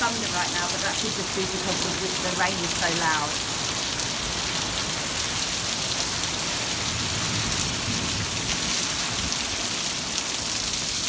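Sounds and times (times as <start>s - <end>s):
heavy rain pouring: 0.0s - 11.0s.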